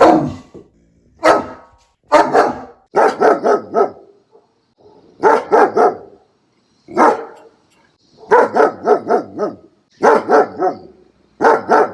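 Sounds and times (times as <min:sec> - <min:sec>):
puppy barking: 0:00.0 - 0:00.4, 0:01.2 - 0:06.2, 0:06.9 - 0:07.6, 0:08.2 - 0:11.9.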